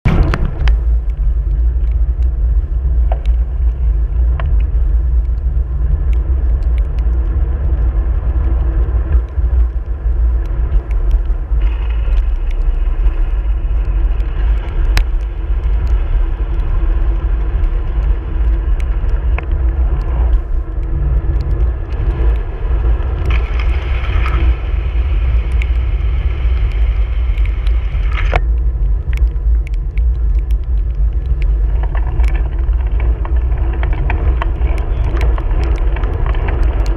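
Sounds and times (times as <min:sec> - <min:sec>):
wind and road noise: 0:00.0 - 0:36.9
sharp ticks: 0:08.6 - 0:24.6.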